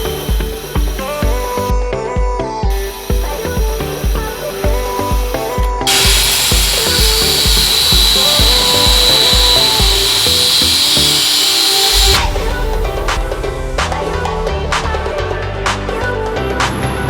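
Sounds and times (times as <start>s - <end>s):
music with steady beat: 0.0s - 17.0s
loud steady hiss: 2.8s - 13.2s.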